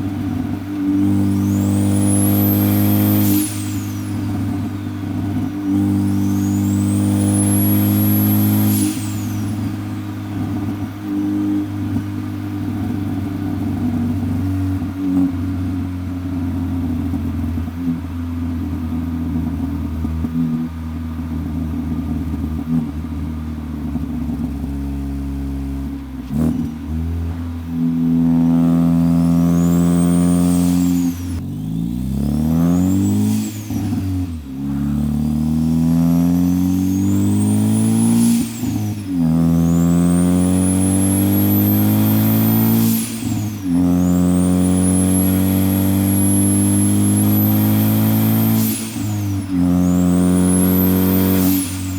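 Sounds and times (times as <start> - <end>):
car engine running: 0.0 - 51.9
turbo whistle: 0.8 - 11.6, 28.3 - 51.9.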